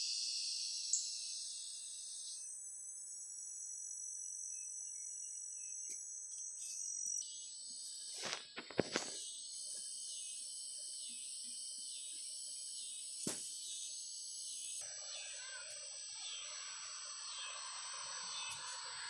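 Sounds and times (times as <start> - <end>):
cicadas chirping: 0.0 - 19.0
low rough drone: 14.8 - 19.0.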